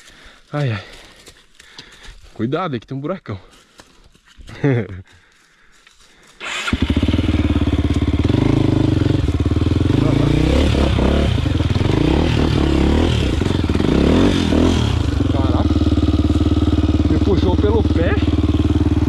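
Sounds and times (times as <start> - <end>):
motorcycle engine revving: 6.4 - 19.0.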